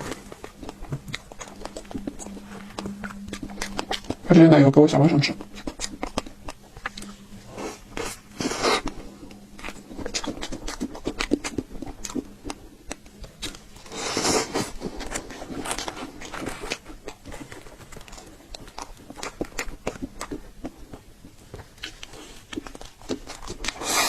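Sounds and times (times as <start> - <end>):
wet mouth clicks and smacks: 5.3 - 7.1.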